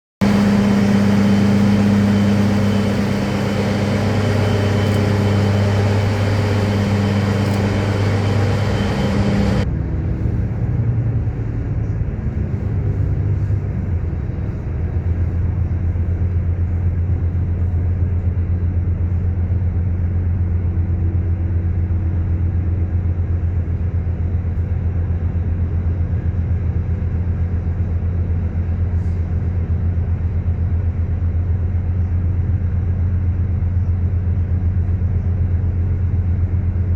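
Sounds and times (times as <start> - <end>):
diesel rail engine running: 0.2 - 36.9.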